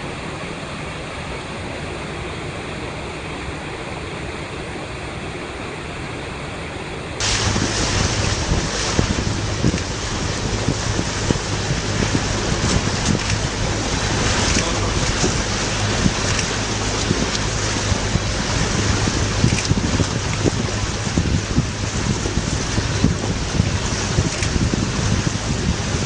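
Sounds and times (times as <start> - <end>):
steady low hum: 0.0 - 26.0
water splashing against rocks: 7.2 - 26.0
wind buffeting microphone: 7.2 - 26.0.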